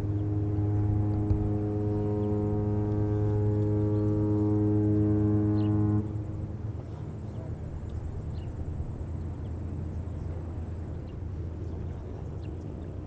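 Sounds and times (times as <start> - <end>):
ship horn deep blast: 0.0 - 8.2.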